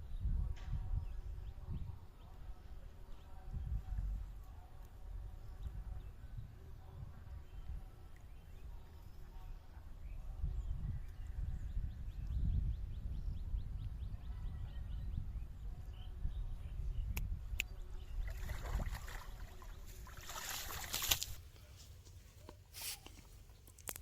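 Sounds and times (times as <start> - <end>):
wind rumble on microphone: 0.0 - 21.5
water splashing and sloshing: 18.3 - 21.5.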